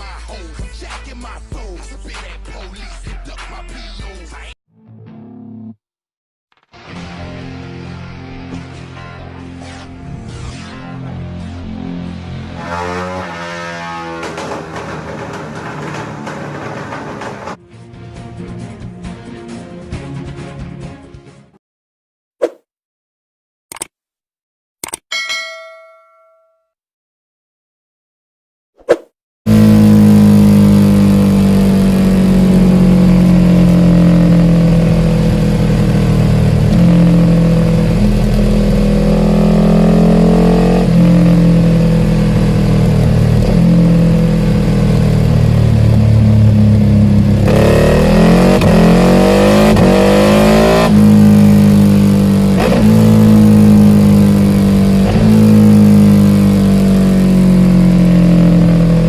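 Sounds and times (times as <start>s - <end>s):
motorcycle engine revving: 11.8s - 17.6s, 29.5s - 59.0s.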